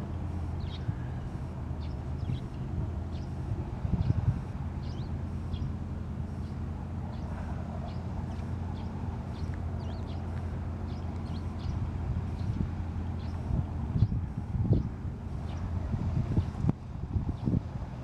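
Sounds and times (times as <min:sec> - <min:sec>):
low outdoor rumble: 0:00.0 - 0:18.0
small birds chirping: 0:00.1 - 0:16.7.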